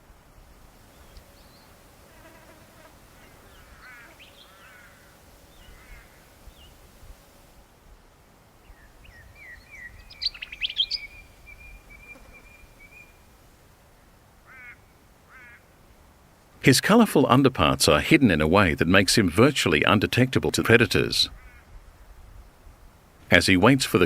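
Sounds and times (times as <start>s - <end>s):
birds chirping: 0.6s - 7.6s, 8.6s - 13.5s.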